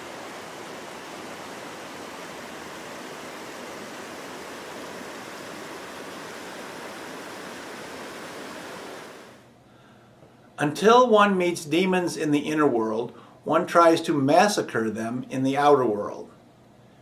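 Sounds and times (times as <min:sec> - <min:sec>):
flowing water rushing: 0:00.0 - 0:09.4.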